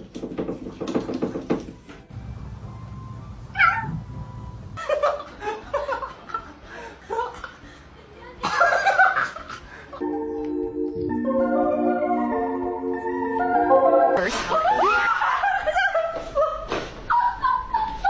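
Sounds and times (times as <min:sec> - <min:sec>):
cat meowing: 0:03.4 - 0:04.2.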